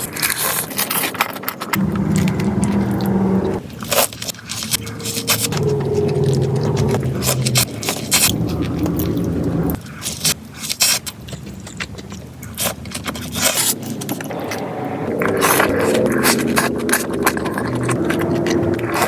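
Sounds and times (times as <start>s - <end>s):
crunchy food being eaten: 0.0s - 14.6s, 15.2s - 19.0s
low steady hum: 1.7s - 3.9s, 4.5s - 10.4s, 13.8s - 19.0s.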